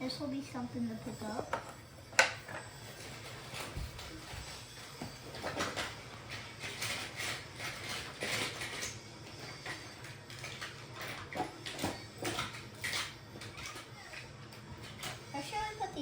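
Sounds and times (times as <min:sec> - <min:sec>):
toy train pieces clicking: 0:05.6 - 0:15.2.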